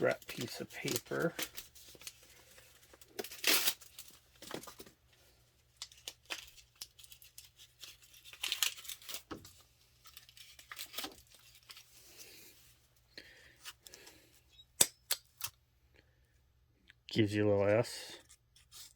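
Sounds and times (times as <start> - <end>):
paper crinkling and tearing: 0.0 - 4.9, 5.7 - 12.5, 18.2 - 18.9.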